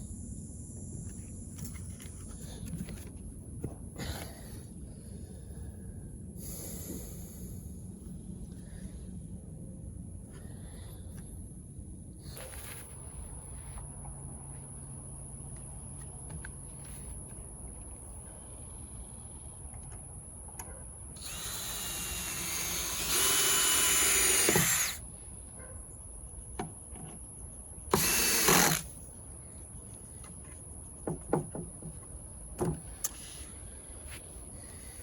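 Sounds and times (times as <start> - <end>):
power drill driving screws: 21.2 - 25.0, 27.9 - 28.9.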